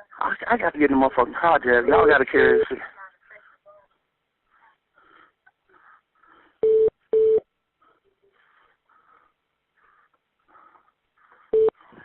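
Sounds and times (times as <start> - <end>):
telephone line beeps: 6.6 - 7.4, 11.5 - 11.8.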